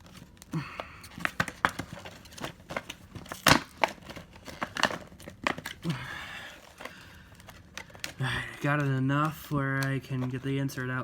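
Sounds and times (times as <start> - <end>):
stiff plastic packaging crinkling: 0.0 - 11.0.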